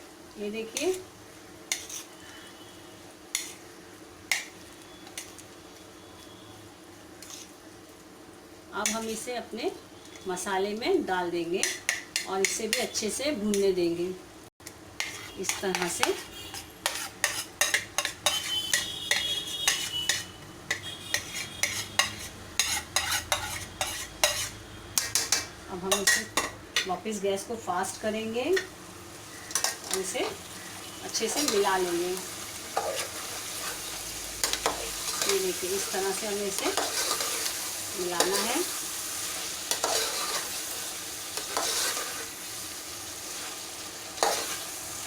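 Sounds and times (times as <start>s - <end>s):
food sizzling: 0.0s - 45.0s
spoon stirring in a bowl: 1.7s - 2.1s, 15.0s - 26.6s, 34.4s - 37.5s, 39.7s - 40.6s, 41.4s - 42.3s.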